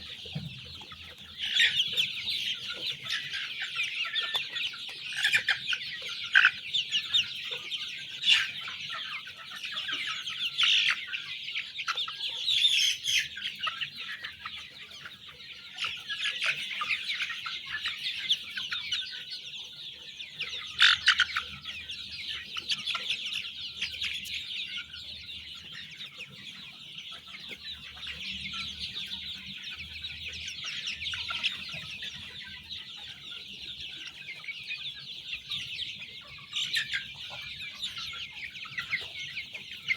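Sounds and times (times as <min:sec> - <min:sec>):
chicks peeping: 0:00.0 - 0:39.9.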